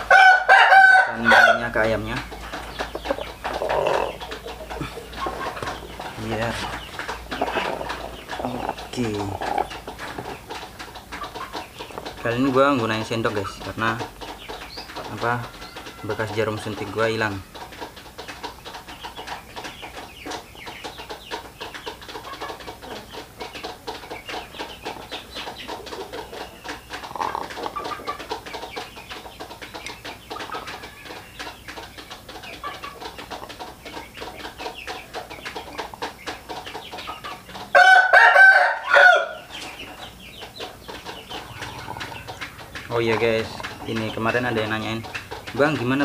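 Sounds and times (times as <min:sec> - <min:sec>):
rooster crowing: 0:00.0 - 0:01.7, 0:37.7 - 0:39.5
chickens clucking: 0:00.0 - 0:46.0.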